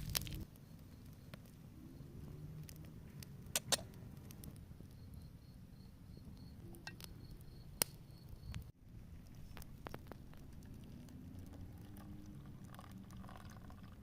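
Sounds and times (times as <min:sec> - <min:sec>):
wood fire crackling: 0:00.0 - 0:05.2, 0:06.8 - 0:14.0
pulsing cricket-like chirp: 0:04.8 - 0:08.7.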